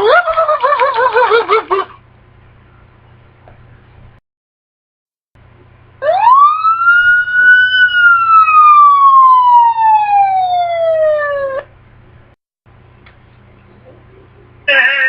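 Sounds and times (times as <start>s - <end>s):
siren wailing: 6.0s - 11.7s.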